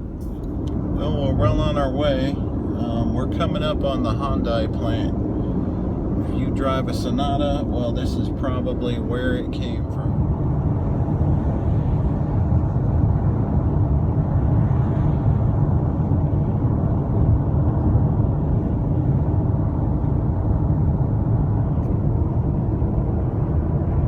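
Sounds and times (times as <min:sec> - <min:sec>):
car road and engine rumble: 0:00.0 - 0:24.0.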